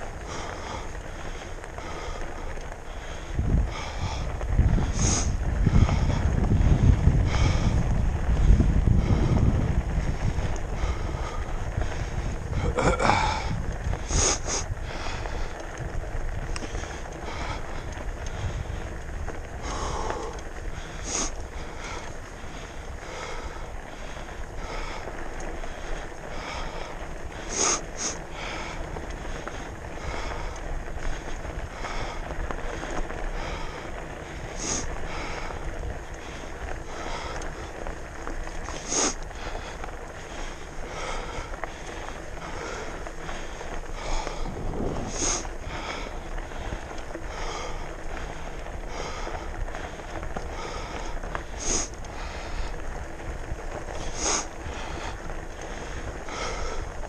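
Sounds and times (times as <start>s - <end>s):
person breathing hard: 0.0s - 16.0s, 16.6s - 57.0s
wind rumbling on microphone: 0.0s - 57.0s.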